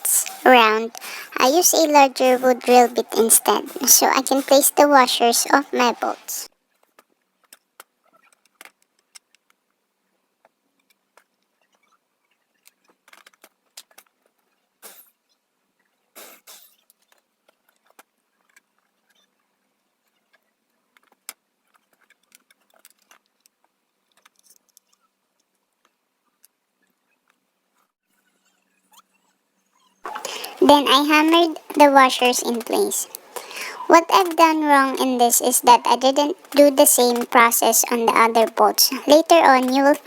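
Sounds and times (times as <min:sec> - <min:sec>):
scraping noise: 0:00.0 - 0:06.5
handling clicks and taps: 0:30.1 - 0:40.0.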